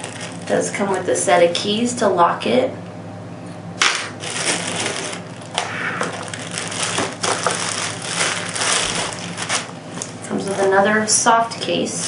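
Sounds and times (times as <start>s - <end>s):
packaging crinkling and rustling: 0.0s - 0.6s, 3.8s - 10.8s.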